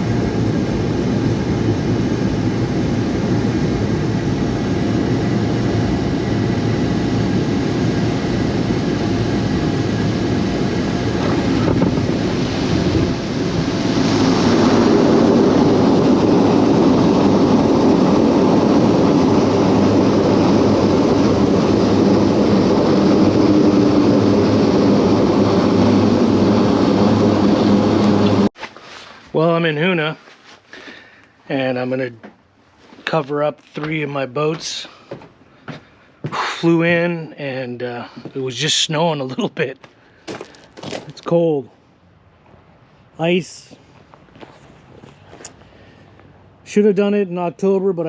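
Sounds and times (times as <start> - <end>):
small plane engine running: 0.0 - 28.6.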